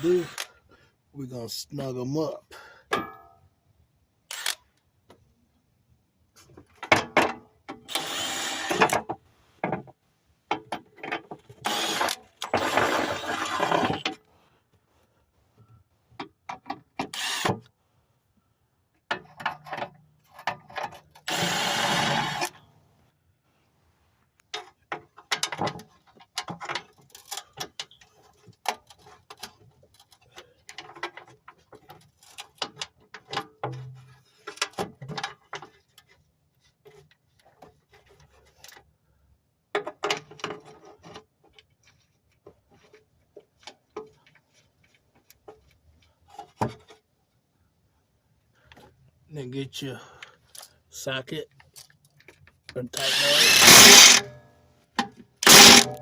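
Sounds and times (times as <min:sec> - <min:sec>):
ratchet wrench clicking: 0:53.0 - 0:54.2, 0:55.4 - 0:56.0.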